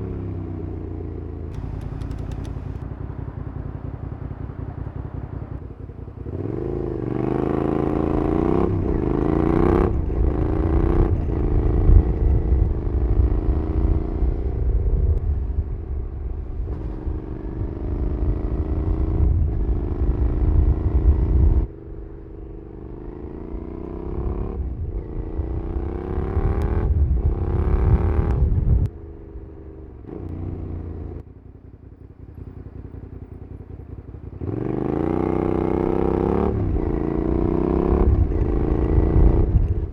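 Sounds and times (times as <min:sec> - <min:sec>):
motorcycle engine accelerating: 0:00.0 - 0:39.9
wind rumble on microphone: 0:06.2 - 0:31.2, 0:34.3 - 0:39.9.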